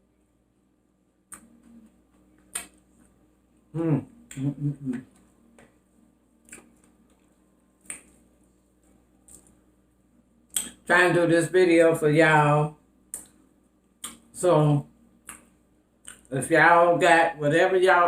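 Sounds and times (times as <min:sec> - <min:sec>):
lip smacks and mouth clicks: 0:01.3 - 0:03.2, 0:06.4 - 0:08.3, 0:09.2 - 0:09.6, 0:10.4 - 0:10.9, 0:13.1 - 0:14.3, 0:15.2 - 0:16.3
person humming mm: 0:03.7 - 0:05.2.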